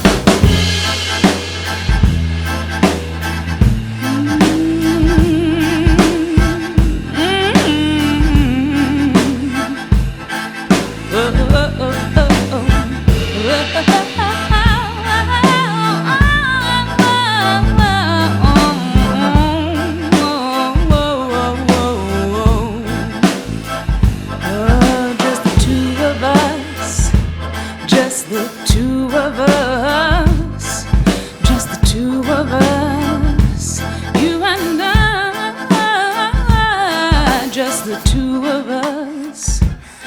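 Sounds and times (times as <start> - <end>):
bass: 0.0 - 35.7
drum-kit beat: 0.0 - 40.0
soul music: 0.0 - 40.0
wavering melodic line: 0.5 - 23.3.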